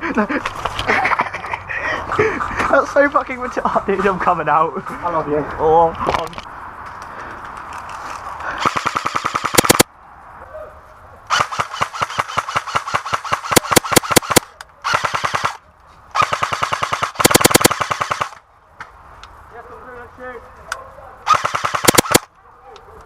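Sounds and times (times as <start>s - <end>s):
airsoft guns firing bursts: 8.6s - 9.9s, 11.3s - 15.6s, 16.2s - 18.4s, 21.3s - 22.3s.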